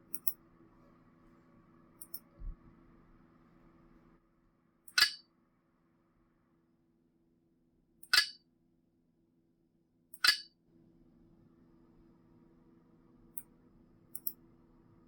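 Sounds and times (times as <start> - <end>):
faint steady hum: 0.0 - 8.0, 10.7 - 15.0.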